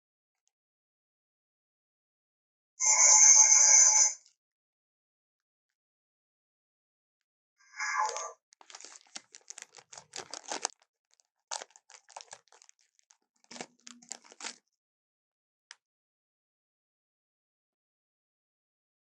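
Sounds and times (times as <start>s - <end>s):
animal chewing and crunching meat: 8.1s - 14.6s.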